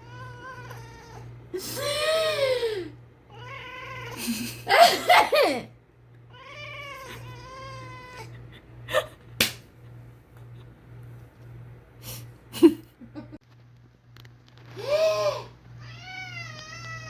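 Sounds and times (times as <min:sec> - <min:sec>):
cat meowing: 0:00.0 - 0:01.3, 0:03.3 - 0:04.2, 0:06.3 - 0:08.3, 0:15.8 - 0:17.0.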